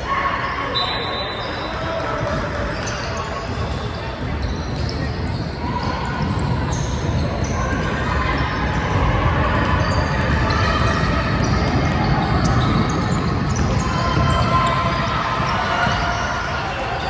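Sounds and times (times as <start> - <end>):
basketball bouncing on gym floor: 3.7 - 16.3.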